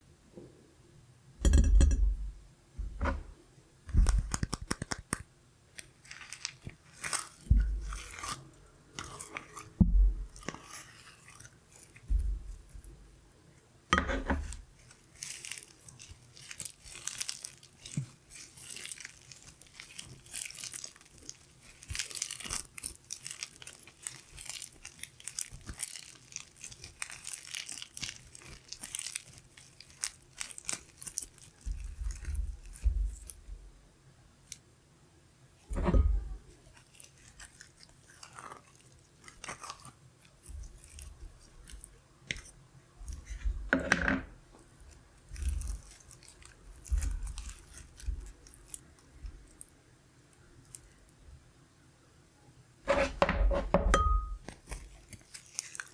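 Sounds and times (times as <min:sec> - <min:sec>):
heavy thumps: 0:01.4 - 0:04.3, 0:35.7 - 0:36.4
slime squished with sticky crackles: 0:03.9 - 0:12.9, 0:14.4 - 0:33.5, 0:35.9 - 0:43.6, 0:44.6 - 0:49.8, 0:54.2 - 0:55.9.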